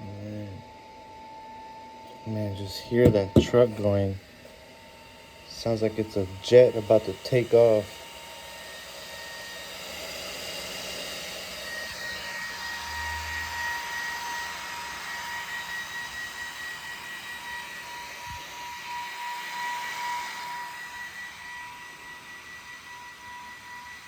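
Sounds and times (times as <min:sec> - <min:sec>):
electric toy truck whine: 0:07.7 - 0:24.0.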